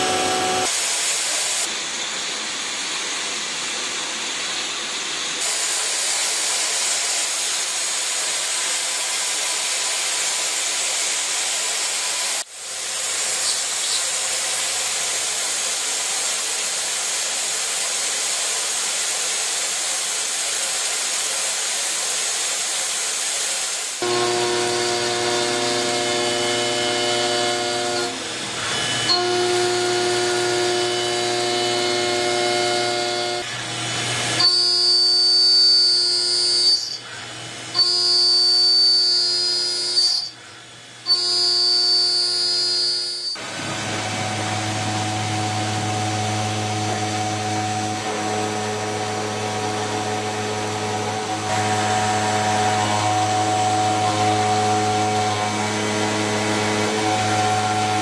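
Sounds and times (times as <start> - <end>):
milling cutters whining: 44.0 - 58.0.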